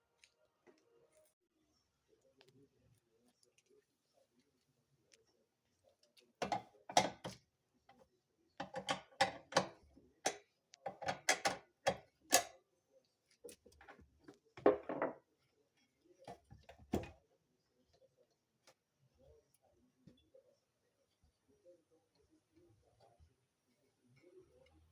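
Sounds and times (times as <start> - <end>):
washing machine clicks and knocks: 6.4 - 7.4, 8.6 - 12.5.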